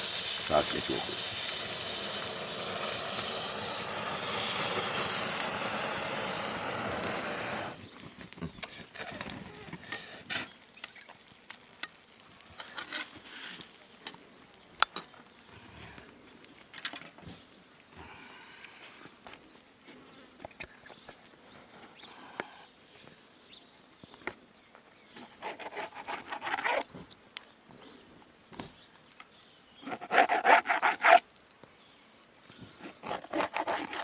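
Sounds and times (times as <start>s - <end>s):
loud hiss: 0.0s - 7.9s.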